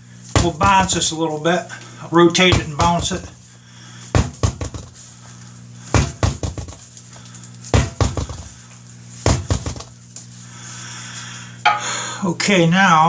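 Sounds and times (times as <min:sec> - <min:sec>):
tire bouncing on floor: 0:00.4 - 0:01.1, 0:02.4 - 0:03.2, 0:04.2 - 0:05.0, 0:06.0 - 0:06.9, 0:07.8 - 0:08.5, 0:09.2 - 0:09.9.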